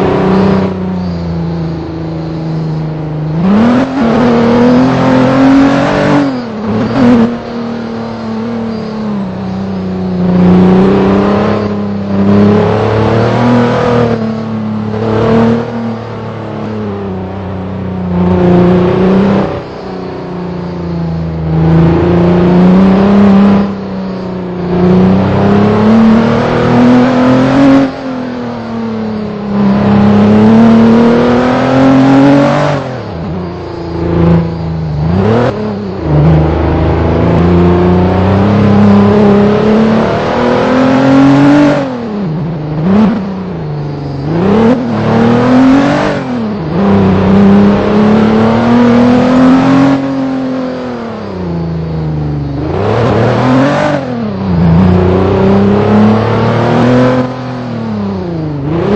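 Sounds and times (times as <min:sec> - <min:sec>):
vehicle engine revving loud: 0:03.3 - 0:08.5, 0:24.7 - 0:58.9.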